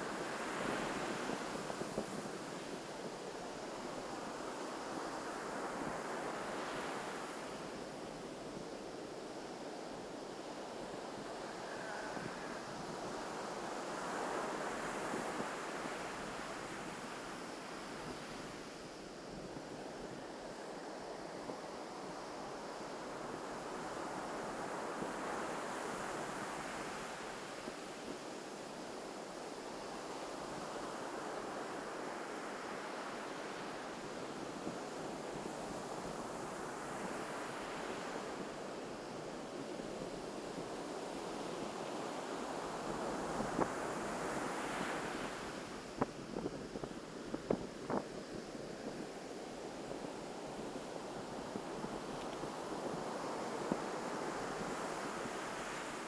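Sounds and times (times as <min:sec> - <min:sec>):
ocean surf breaking on beach: 0:29.2 - 0:56.0.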